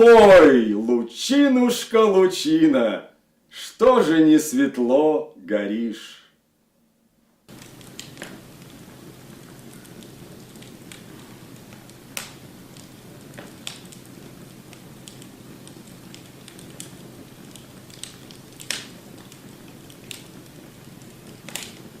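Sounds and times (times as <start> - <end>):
wood fire crackling: 0.0 - 3.0, 7.4 - 22.0
fire pops and snaps: 7.5 - 22.0.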